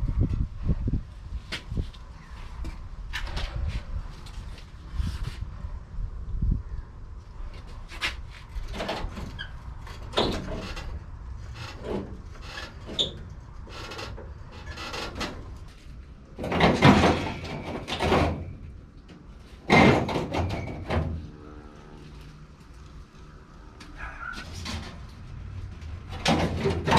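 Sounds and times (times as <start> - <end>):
scraping and knocking on sheet metal: 16.4 - 18.6, 19.6 - 21.2, 26.1 - 26.9.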